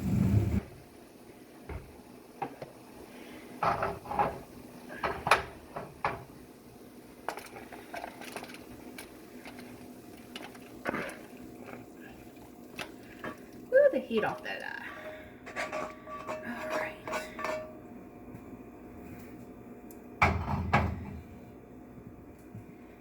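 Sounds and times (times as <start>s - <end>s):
cookware and utensil clinking: 14.1s - 17.8s.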